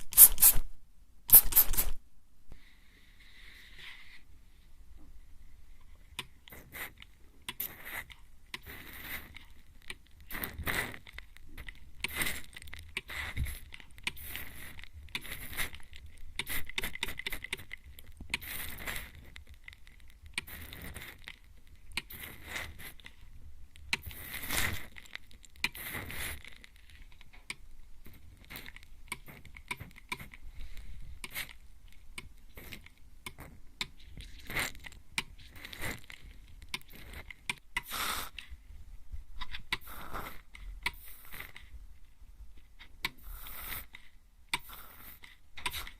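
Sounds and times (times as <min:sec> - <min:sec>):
spray bottle spritzing: 0:00.0 - 0:00.7, 0:01.3 - 0:02.0.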